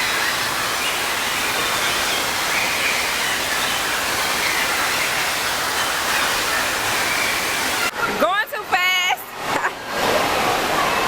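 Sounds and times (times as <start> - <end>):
distant voices: 0.0 - 7.9
running and splashing water: 0.0 - 8.0.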